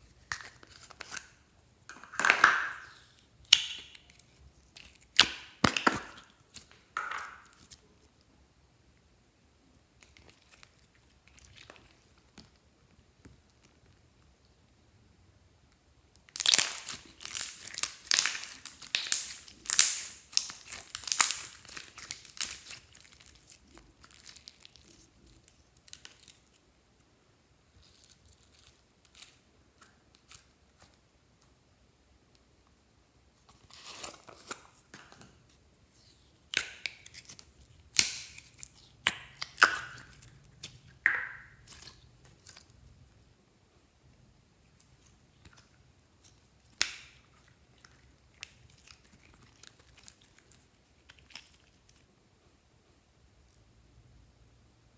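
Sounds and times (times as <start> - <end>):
slime crinkling and crackling: 16.2 - 26.6, 33.5 - 43.0, 44.6 - 52.1
slime popping and clicking: 16.3 - 22.8.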